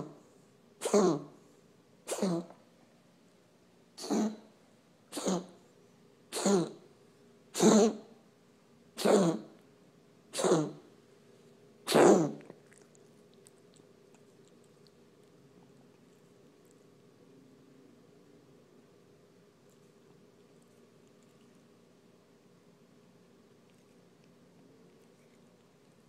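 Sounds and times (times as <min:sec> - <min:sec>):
pet coughing: 0:00.8 - 0:01.4, 0:02.0 - 0:02.6, 0:04.0 - 0:05.6, 0:06.3 - 0:06.9, 0:07.5 - 0:08.2, 0:09.0 - 0:09.6, 0:10.3 - 0:10.9, 0:11.8 - 0:12.6.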